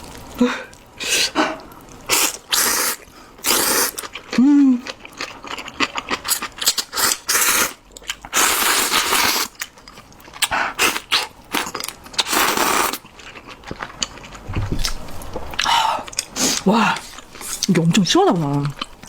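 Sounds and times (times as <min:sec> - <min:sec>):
noodles being slurped: 0:02.1 - 0:04.4, 0:05.6 - 0:09.6, 0:10.4 - 0:14.2
chewing and crunching: 0:03.4 - 0:19.0.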